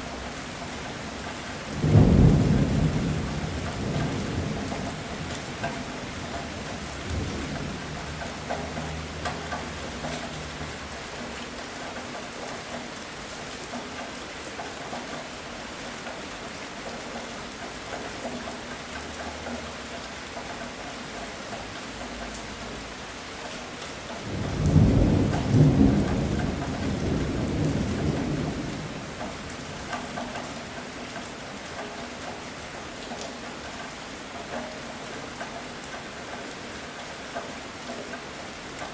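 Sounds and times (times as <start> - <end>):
heavy rain falling: 0.0 - 38.9
thunder rumbling: 24.2 - 29.6.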